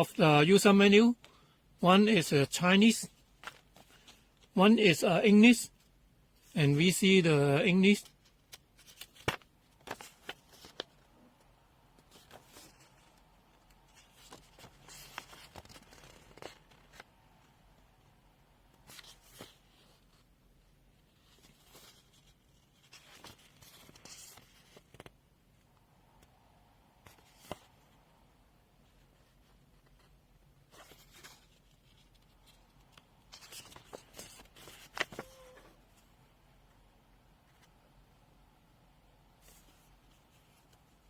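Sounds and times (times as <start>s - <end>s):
paper rustling: 3.0s - 4.5s, 8.0s - 11.1s, 12.0s - 17.1s, 21.0s - 25.2s, 27.0s - 27.9s, 29.2s - 36.1s
pages being turned: 8.1s - 11.1s, 12.0s - 17.1s, 21.2s - 25.1s, 30.7s - 35.7s.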